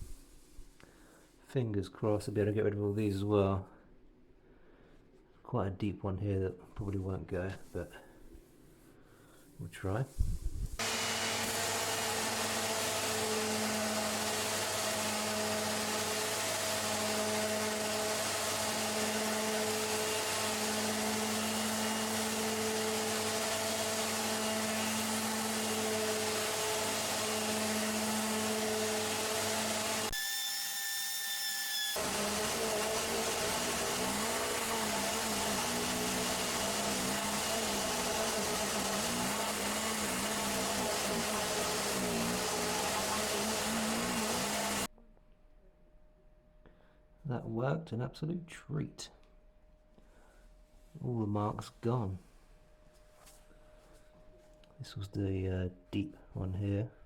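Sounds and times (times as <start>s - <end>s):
orbital sander sanding wood: 10.7s - 30.9s, 31.8s - 44.9s.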